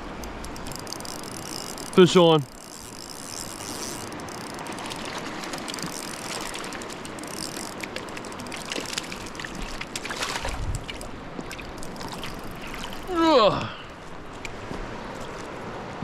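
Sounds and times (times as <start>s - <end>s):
fishing reel ticking: 0.0s - 10.0s, 10.9s - 13.1s
river water rushing: 0.0s - 16.0s.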